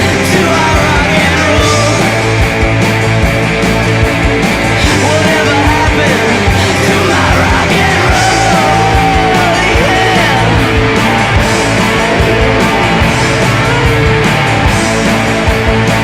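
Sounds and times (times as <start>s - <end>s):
person singing: 0.0s - 2.2s, 4.8s - 10.9s
drum beat: 0.0s - 16.0s
electric guitars: 0.0s - 16.0s.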